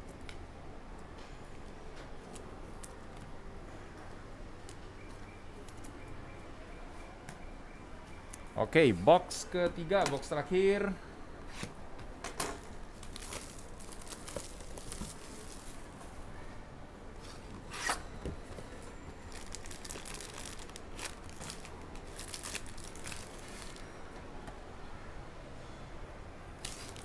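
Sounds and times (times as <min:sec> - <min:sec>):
plastic wrapping tearing and crinkling: 0:12.9 - 0:16.0, 0:19.2 - 0:23.9, 0:26.6 - 0:27.0.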